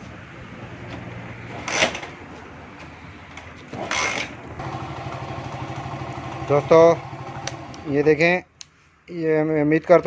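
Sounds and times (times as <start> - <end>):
motorcycle engine idling: 4.5 - 7.8.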